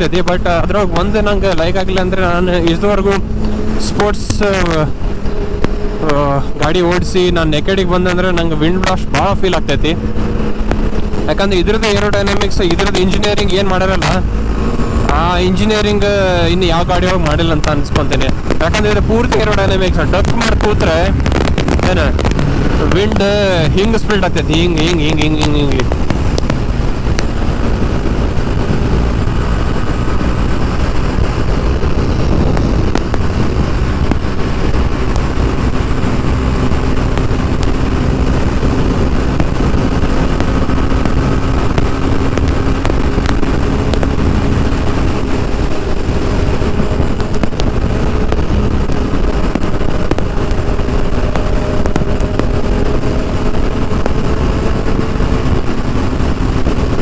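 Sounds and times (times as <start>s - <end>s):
motorcycle engine drone: 0.0s - 57.0s
wind rush on microphone: 0.0s - 57.0s.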